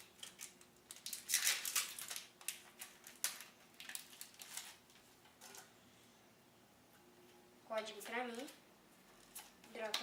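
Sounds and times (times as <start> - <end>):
foil wrapper crinkling: 0.0 - 5.6.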